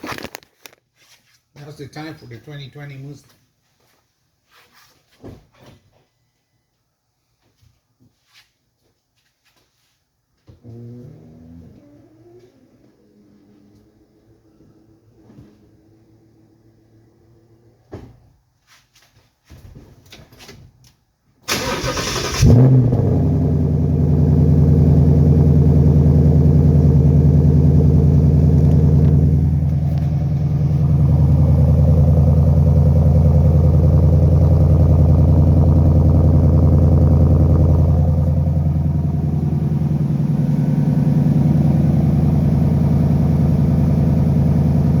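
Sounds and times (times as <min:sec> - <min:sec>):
car engine revving and idling: 0:10.6 - 0:15.3, 0:21.8 - 0:45.0.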